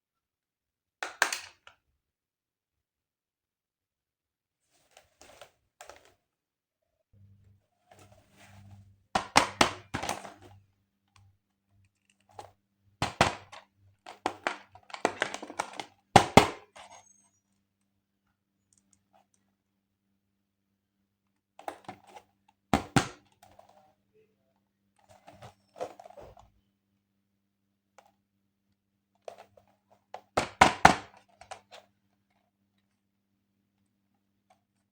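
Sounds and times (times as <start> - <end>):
plastic toys and packaging handled: 4.6 - 6.3, 7.8 - 17.5, 21.6 - 26.6, 29.1 - 33.2.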